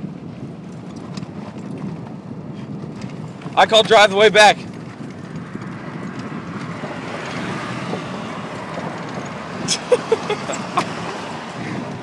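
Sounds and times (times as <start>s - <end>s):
golf cart driving: 0.0s - 12.0s
wind buffeting microphone: 0.0s - 12.0s
knocks and rattles: 2.8s - 12.0s.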